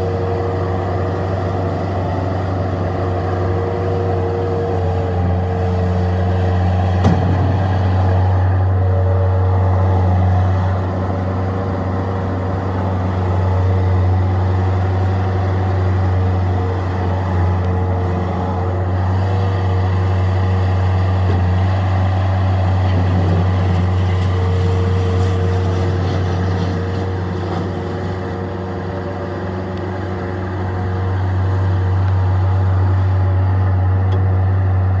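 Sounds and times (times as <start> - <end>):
diesel engine running: 0.0 - 35.0.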